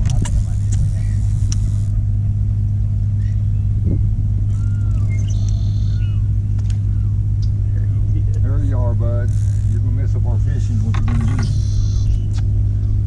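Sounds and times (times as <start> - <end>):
low motor hum: 0.0 - 13.0
birds chirping: 3.1 - 12.4.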